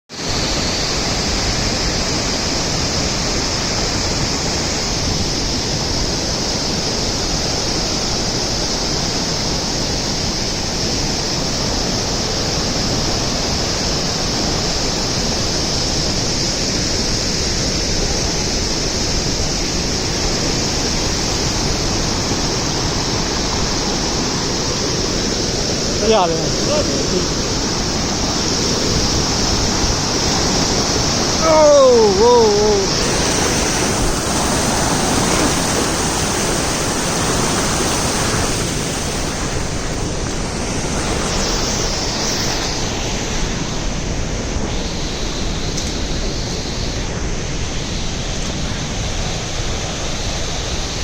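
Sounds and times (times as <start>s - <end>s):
waterfall crashing: 18.6s - 43.8s.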